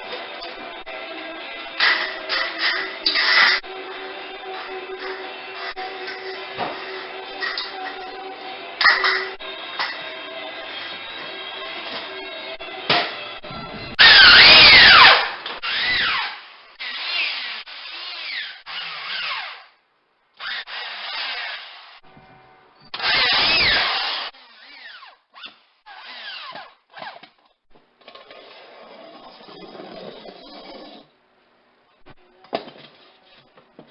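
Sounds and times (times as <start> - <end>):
power drill driving screws: 14.0 - 19.7, 20.4 - 22.0, 23.0 - 25.2, 25.9 - 27.3.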